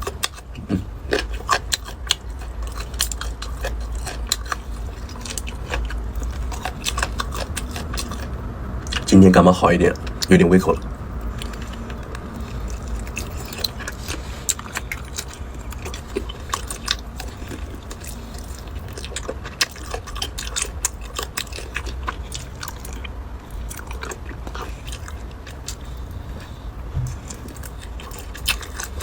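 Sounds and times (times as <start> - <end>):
person biting and chewing: 0.0 - 9.1, 11.3 - 29.0.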